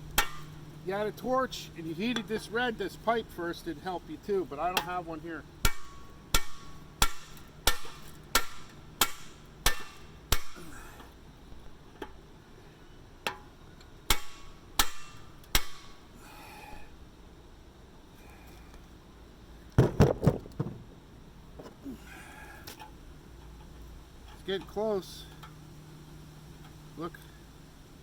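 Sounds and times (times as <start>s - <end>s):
hammer striking metal: 0.2s - 0.6s, 5.6s - 10.7s, 14.1s - 16.0s
heavier knocks clattering: 19.8s - 20.9s.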